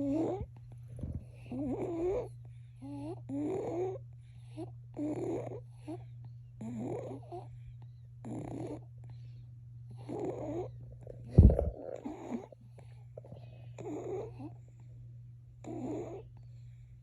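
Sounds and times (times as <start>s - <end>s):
babies snoring: 0.0s - 7.6s, 8.2s - 9.2s, 9.9s - 14.7s, 15.6s - 16.8s
steady low hum: 0.0s - 17.0s
sudden low thump: 11.3s - 11.8s.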